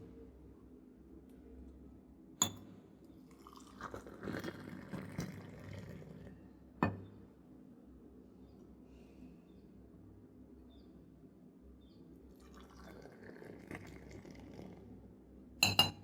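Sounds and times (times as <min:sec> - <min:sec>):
metal vessel clinking: 0:02.4 - 0:02.7, 0:15.6 - 0:16.0.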